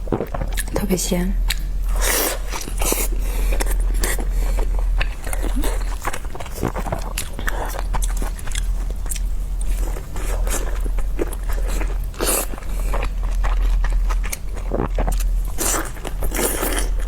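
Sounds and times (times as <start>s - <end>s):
steady low hum: 0.0s - 17.0s
chewing and mouth smacks: 0.1s - 0.8s, 1.4s - 17.0s.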